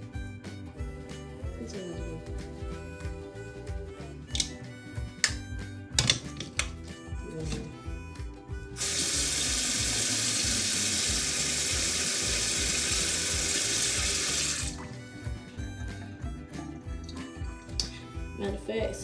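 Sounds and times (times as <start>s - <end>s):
background music with steady beat: 0.0s - 19.0s
faucet water running into sink: 8.8s - 15.0s.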